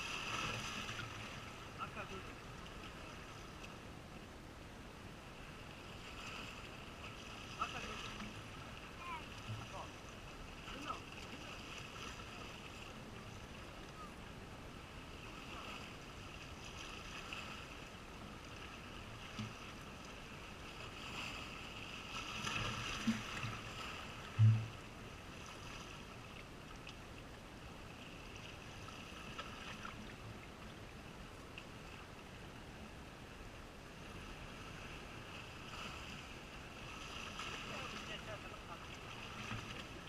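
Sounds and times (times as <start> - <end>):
calm sea: 0.0 - 40.0
light wind: 0.0 - 40.0
low dull knocks: 24.3 - 24.9.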